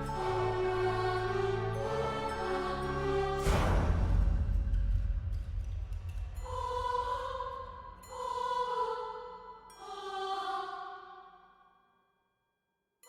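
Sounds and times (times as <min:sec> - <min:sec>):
deep rumble: 0:02.8 - 0:08.0.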